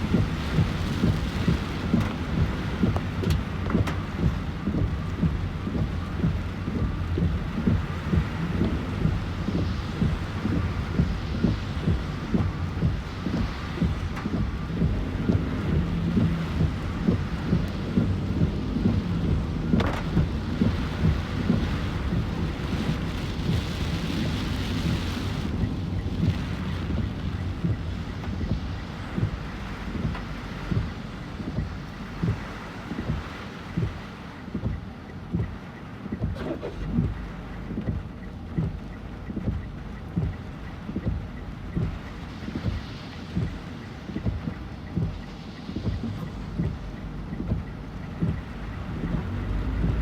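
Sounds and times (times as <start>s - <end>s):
heavy rain falling: 0.0s - 50.0s
regular low thump: 0.0s - 50.0s
wind buffeting microphone: 0.0s - 50.0s.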